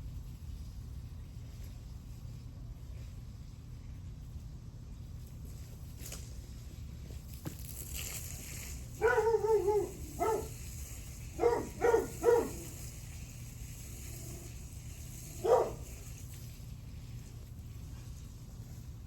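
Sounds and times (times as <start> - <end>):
dog barking: 9.0 - 10.6, 11.3 - 12.8, 15.4 - 15.9.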